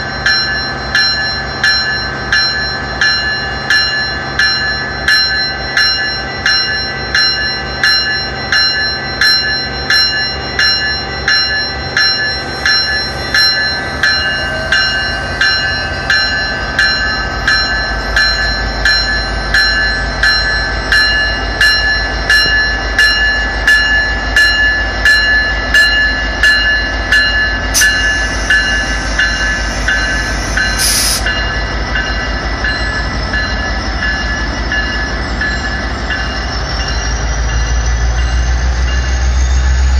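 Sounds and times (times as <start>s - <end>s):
commuter train rumbling: 0.0s - 39.9s
level-crossing warning bell: 0.0s - 39.9s
short high-pitched squeal: 27.8s - 31.3s.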